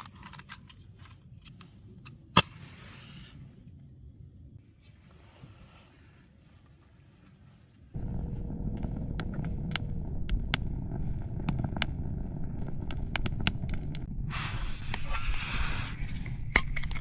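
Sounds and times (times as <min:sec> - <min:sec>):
campfire crackling: 0:08.0 - 0:17.0.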